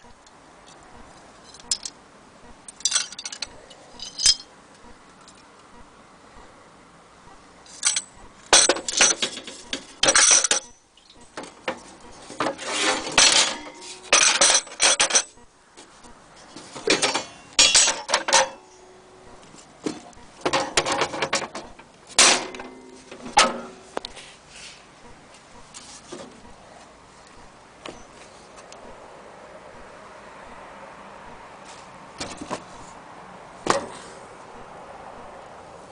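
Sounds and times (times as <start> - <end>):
metal parts clanking: 1.4 - 2.0, 2.7 - 4.5, 7.7 - 15.4, 16.5 - 18.8, 19.9 - 23.8.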